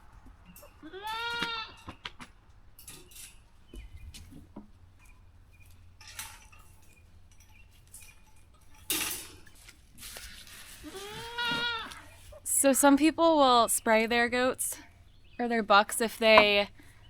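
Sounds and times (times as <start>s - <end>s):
clinks knocks and rustles: 2.8s - 10.7s.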